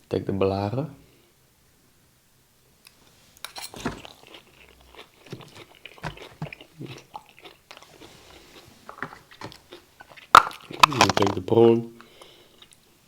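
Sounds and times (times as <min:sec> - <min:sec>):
crunching and chewing crispy food: 0:03.5 - 0:11.5.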